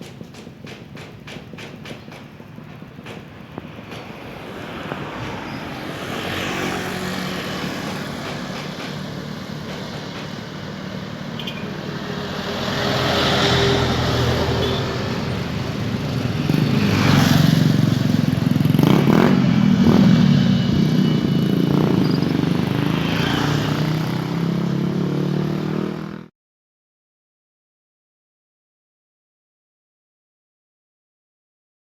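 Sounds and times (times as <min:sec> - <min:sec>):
heavy vehicle engine running: 0:00.0 - 0:25.2
road noise: 0:00.0 - 0:26.3.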